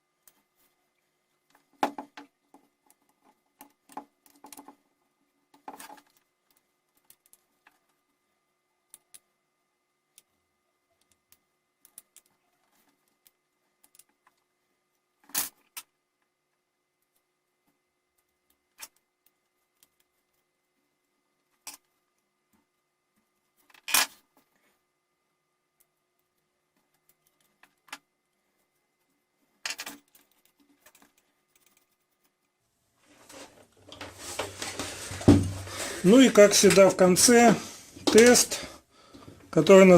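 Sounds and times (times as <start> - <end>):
small parts clicking: 11.0 - 14.4, 29.6 - 32.5.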